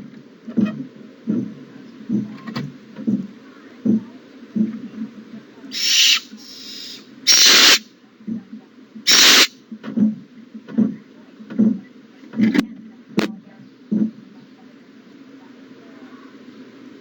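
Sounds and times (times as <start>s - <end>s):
soft low thumps: 0.0s - 5.2s, 9.7s - 12.5s, 13.2s - 14.3s
owlets hissing begging calls: 5.7s - 7.8s, 9.1s - 9.5s.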